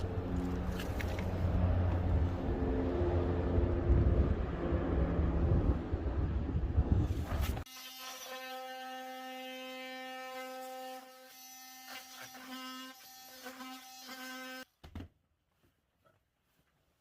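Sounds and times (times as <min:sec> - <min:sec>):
electric power tool buzzing: 0:07.7 - 0:14.7.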